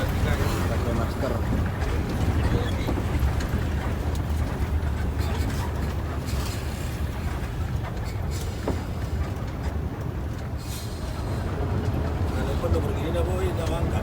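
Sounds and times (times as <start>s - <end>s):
bus engine and road rumble: 0.0s - 14.0s.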